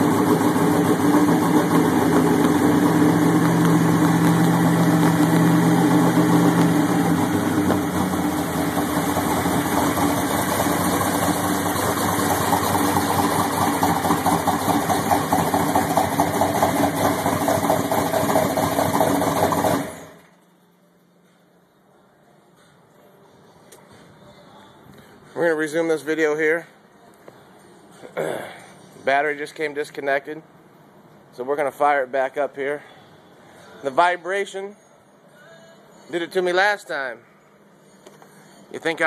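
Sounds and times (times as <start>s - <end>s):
car engine idling: 0.0s - 20.2s.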